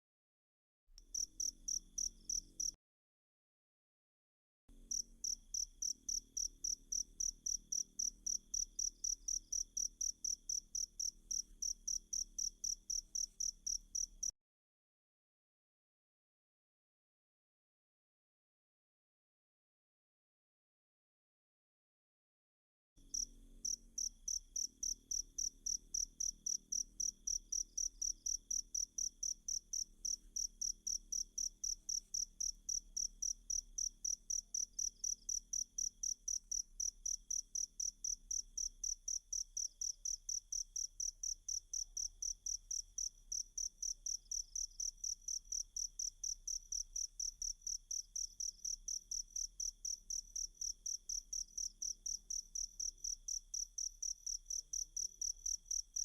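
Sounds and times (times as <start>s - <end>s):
cricket chirping: 1.1s - 2.8s, 4.9s - 14.3s, 23.0s - 56.0s.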